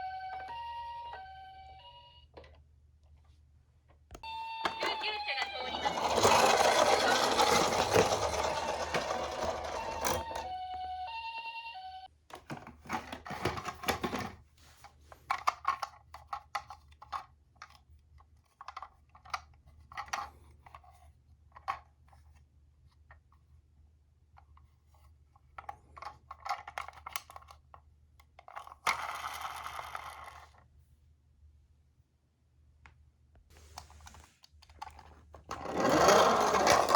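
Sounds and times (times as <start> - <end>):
toy electronic siren: 0.0 - 2.3, 4.2 - 12.1
toy cars clattering on cardboard: 4.7 - 10.5, 12.4 - 14.4, 33.6 - 36.9.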